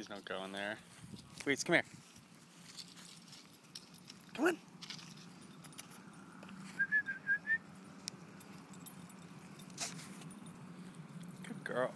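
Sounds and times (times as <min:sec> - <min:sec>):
person whistling for a dog: 0:06.8 - 0:07.6.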